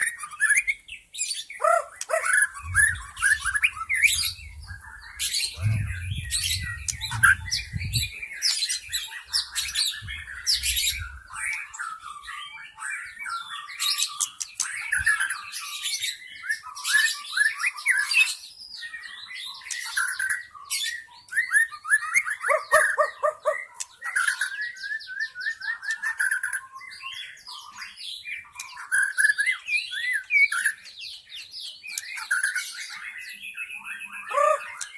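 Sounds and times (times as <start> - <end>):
bird singing chirps and trills: 0.0 - 34.9
low rumble: 5.5 - 8.1.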